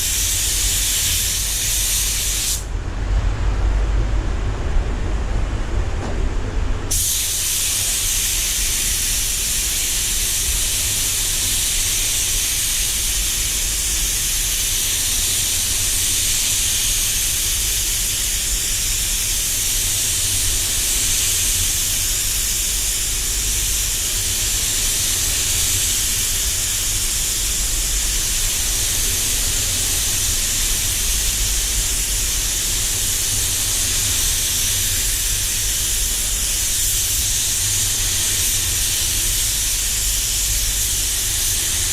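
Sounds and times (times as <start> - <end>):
spray gun hissing: 0.0 - 2.7, 6.9 - 41.9
low steady rumble: 2.2 - 6.9.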